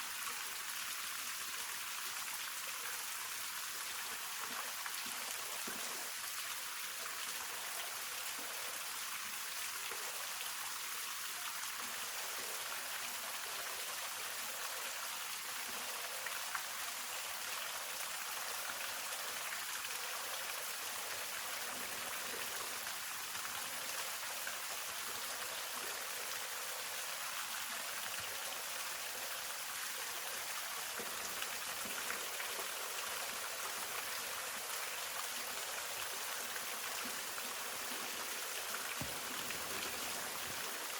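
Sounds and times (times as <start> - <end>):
waterfall splashing: 39.0 - 40.9.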